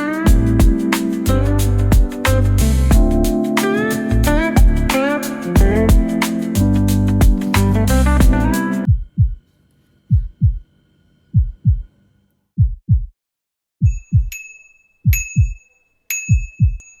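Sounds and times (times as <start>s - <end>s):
heartbeat thuds: 0.3s - 0.8s, 1.9s - 2.2s, 2.9s - 3.4s, 4.5s - 4.9s, 5.6s - 6.2s, 7.1s - 7.5s, 8.2s - 9.4s, 10.1s - 10.6s, 11.4s - 11.9s, 12.6s - 13.1s, 13.8s - 14.3s, 15.0s - 15.6s, 16.3s - 16.9s.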